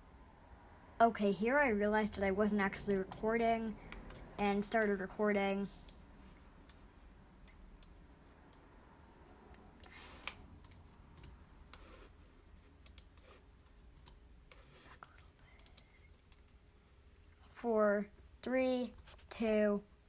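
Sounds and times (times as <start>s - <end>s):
low steady hum: 0.0s - 20.0s
faint scattered clicks: 2.1s - 4.3s, 12.8s - 17.2s.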